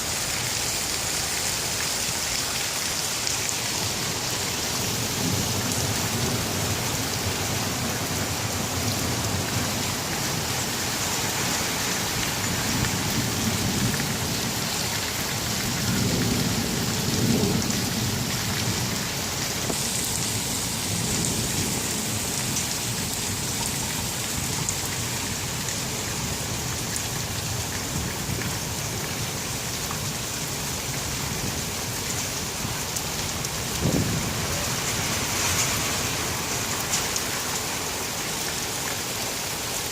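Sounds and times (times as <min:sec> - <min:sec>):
heavy rain pouring: 0:00.0 - 0:39.9
thunder rumbling: 0:33.6 - 0:36.1.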